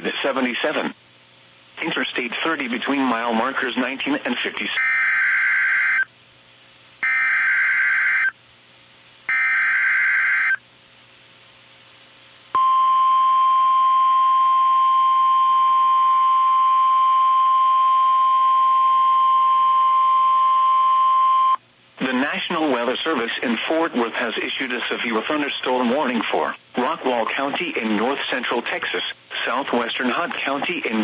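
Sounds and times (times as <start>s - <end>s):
steady warning alarm tone: 4.8s - 6.1s, 7.0s - 8.4s, 9.3s - 10.6s.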